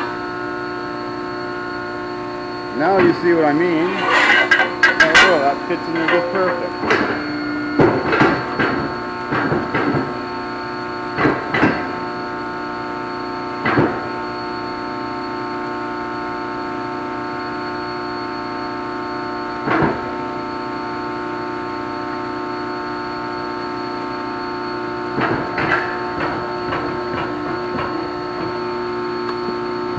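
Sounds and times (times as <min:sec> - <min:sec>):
shop machinery humming: 0:00.0 - 0:15.0
metal clanks: 0:03.7 - 0:07.2.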